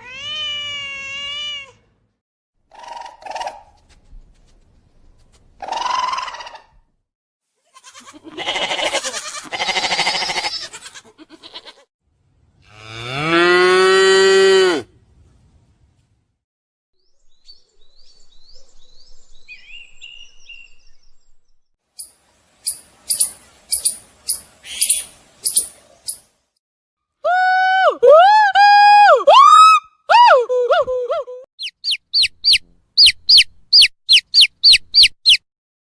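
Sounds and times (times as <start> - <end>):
animal calls: 31.6 - 35.4
sharp chirps: 31.6 - 35.4.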